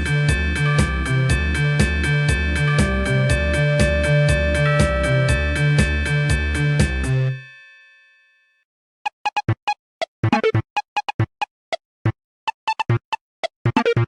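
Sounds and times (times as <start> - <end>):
synthesizer tune with clipped notes: 0.0 - 7.4
polyphonic ringtone: 0.1 - 8.6.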